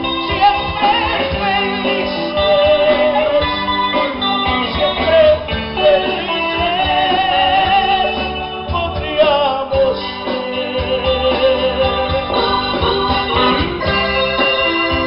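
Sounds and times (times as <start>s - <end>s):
latin band playing: 0.0s - 15.0s
wavering melody line: 10.1s - 15.0s.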